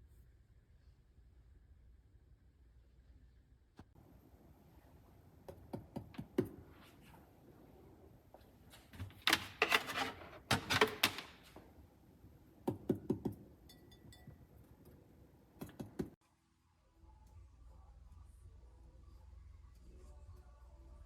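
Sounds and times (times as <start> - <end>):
hard objects clicking and knocking: 5.4 - 6.7, 8.9 - 11.8, 12.4 - 16.2.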